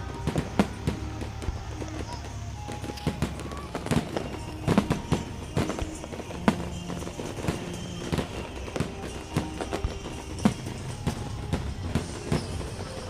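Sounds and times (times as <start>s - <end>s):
faint music: 0.0s - 13.0s
fireworks bangs and crackles: 0.0s - 13.0s.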